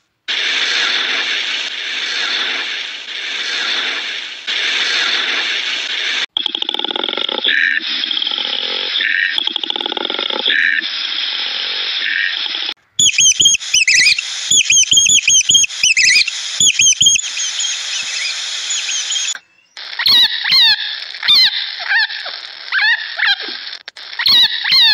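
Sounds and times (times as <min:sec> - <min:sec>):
falling animal calls: 0:13.0 - 0:24.9
high animal chirps and squeaks: 0:13.0 - 0:24.9.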